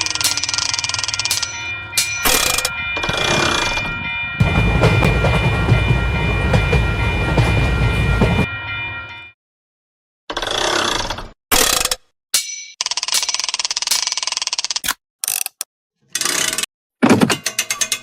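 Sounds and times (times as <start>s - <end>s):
crossing warning bell ringing: 0.0s - 9.4s
train wheels clattering: 4.4s - 8.5s.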